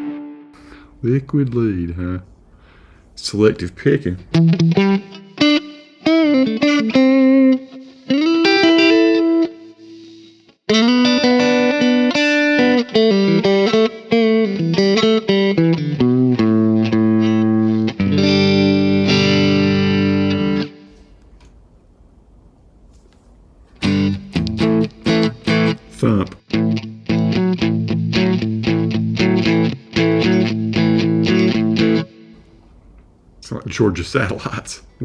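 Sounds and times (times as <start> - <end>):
electric guitar playing: 0.0 - 0.8, 4.3 - 20.9, 23.8 - 32.6.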